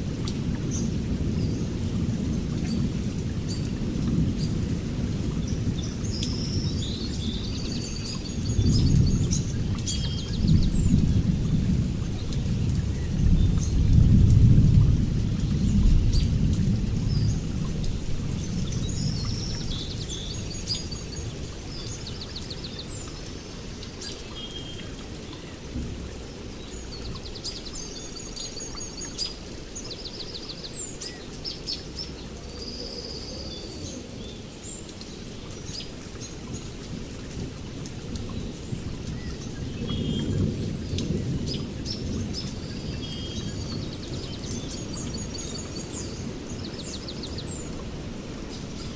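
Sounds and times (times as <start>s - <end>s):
distant thunder rumble: 8.4s - 22.6s, 36.4s - 48.9s
birds chirping and trilling: 39.1s - 48.9s.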